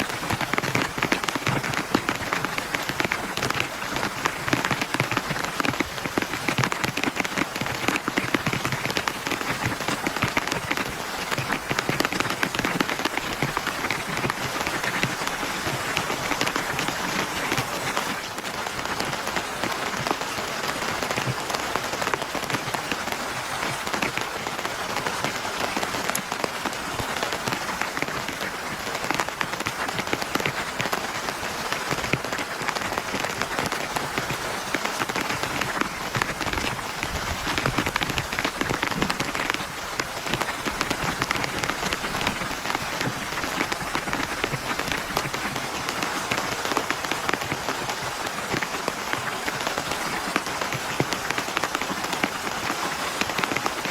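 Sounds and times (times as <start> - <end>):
heavy rain falling: 0.0 - 53.9.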